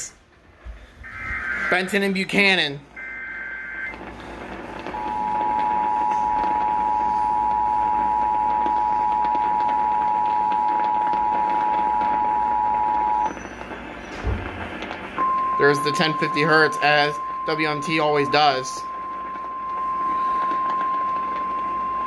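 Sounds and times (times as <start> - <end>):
radio hiss: 0.0 - 22.0.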